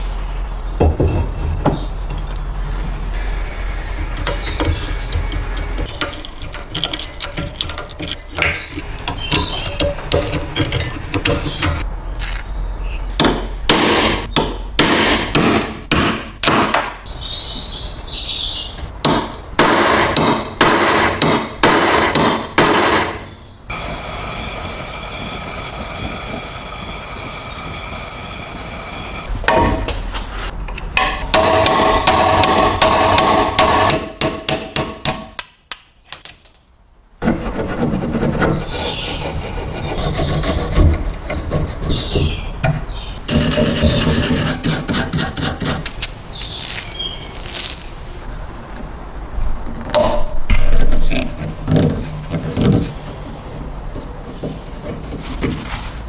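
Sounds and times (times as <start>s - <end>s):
metal scraping strokes: 23.7s - 29.4s, 43.3s - 47.8s.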